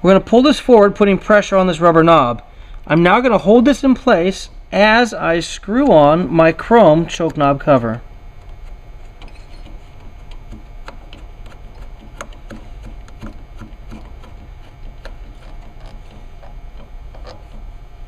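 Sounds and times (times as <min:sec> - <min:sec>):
knob cover clicking while screwed: 0:07.2 - 0:17.7.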